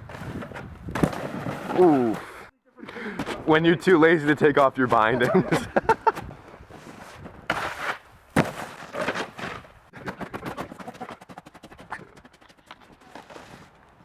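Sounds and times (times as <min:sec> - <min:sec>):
snowboard thud on snow: 0:00.0 - 0:02.2, 0:06.0 - 0:09.8.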